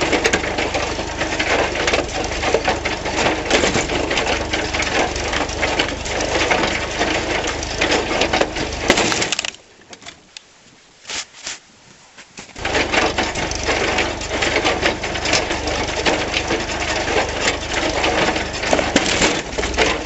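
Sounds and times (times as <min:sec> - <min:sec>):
wood cracking and splitting: 0:00.0 - 0:10.3, 0:12.5 - 0:20.0
log splitter clattering: 0:00.0 - 0:10.4, 0:12.4 - 0:20.0
tractor engine hum: 0:00.0 - 0:11.0, 0:12.5 - 0:20.0.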